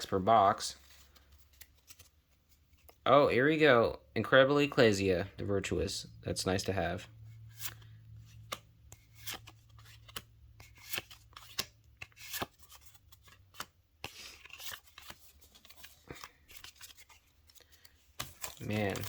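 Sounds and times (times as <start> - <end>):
cards snapping and sliding: 7.5 - 19.0.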